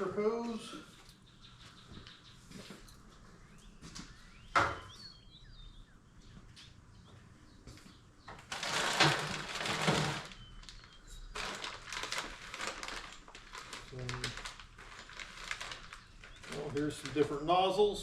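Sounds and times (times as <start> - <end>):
plastic packaging crinkling: 8.4 - 17.5.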